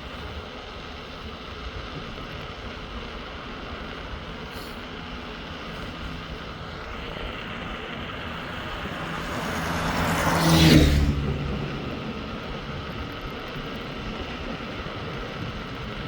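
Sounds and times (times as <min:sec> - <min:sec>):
wind and road noise: 0:00.0 - 0:16.0
vehicle passing by: 0:05.6 - 0:16.0.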